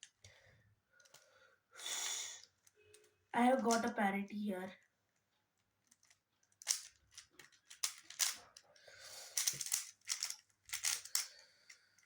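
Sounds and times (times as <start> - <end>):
puzzle cube layers clicking: 9.4 - 11.3.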